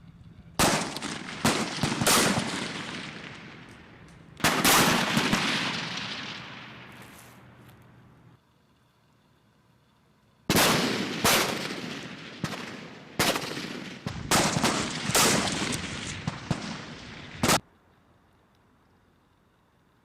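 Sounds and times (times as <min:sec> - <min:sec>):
rifle shots with echo: 0:00.6 - 0:07.0, 0:10.5 - 0:17.6.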